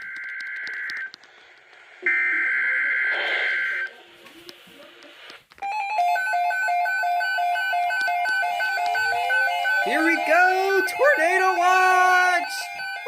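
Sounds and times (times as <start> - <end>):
pulsing two-tone alert alarm: 2.0 - 3.9, 5.6 - 13.0.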